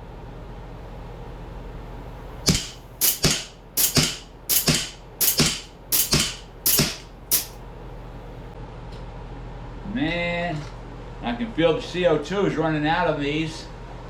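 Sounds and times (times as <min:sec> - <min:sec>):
air pistol shots cracking: 0:02.5 - 0:07.6.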